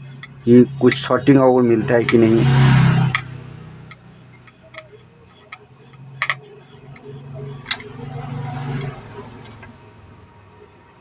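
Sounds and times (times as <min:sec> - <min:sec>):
low hum: 0:00.0 - 0:10.4
tools clicking on plastic casing: 0:05.5 - 0:07.1.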